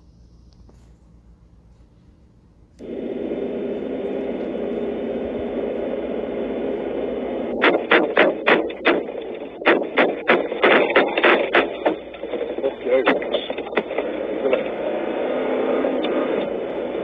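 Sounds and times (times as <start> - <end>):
vehicle engine humming: 2.5 - 17.0
loud bangs: 7.5 - 14.8.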